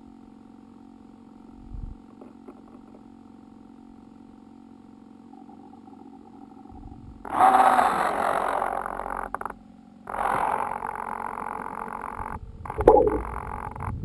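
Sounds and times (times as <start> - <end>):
electric motors and propellers humming: 0.0 - 14.0.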